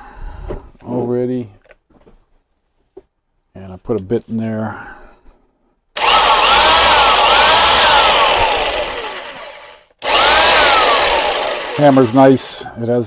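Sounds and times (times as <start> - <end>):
hammer drill running: 6.0 - 12.6.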